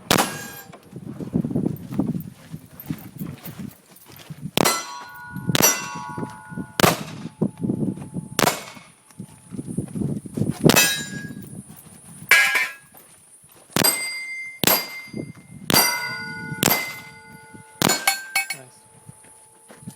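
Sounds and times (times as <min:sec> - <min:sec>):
pistol shots: 0:00.0 - 0:00.7, 0:04.6 - 0:07.4, 0:08.4 - 0:09.0, 0:10.7 - 0:11.3, 0:13.8 - 0:18.5
steel targets clanging: 0:00.0 - 0:00.8, 0:04.6 - 0:09.0, 0:10.7 - 0:11.5, 0:12.3 - 0:12.9, 0:13.8 - 0:19.6.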